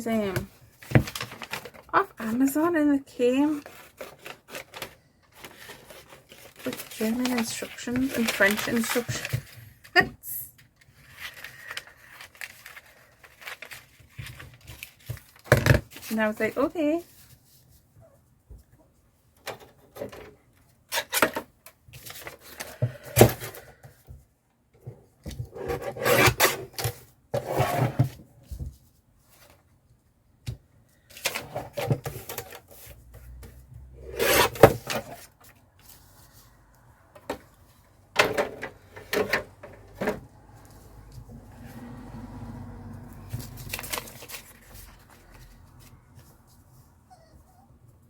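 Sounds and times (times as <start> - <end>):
paper rubbing and scraping: 5.4 - 9.6.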